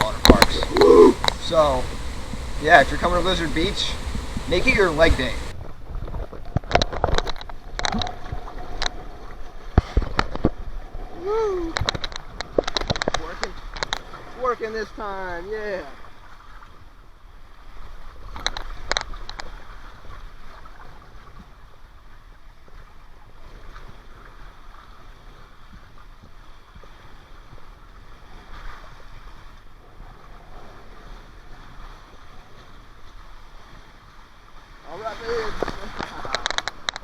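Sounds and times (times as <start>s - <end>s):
water rushing down slide: 0.0s - 5.6s, 34.8s - 37.0s.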